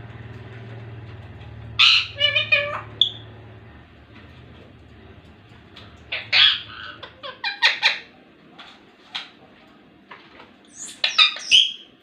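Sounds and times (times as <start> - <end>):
parrot squawking and chattering: 1.8 - 3.3, 5.8 - 8.2, 10.7 - 11.9.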